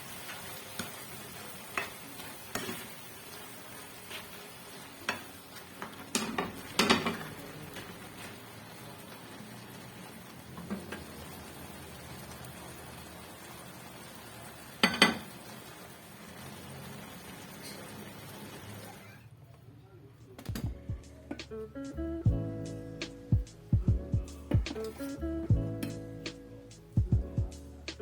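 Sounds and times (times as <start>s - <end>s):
food sizzling in a pan: 0.0s - 19.1s.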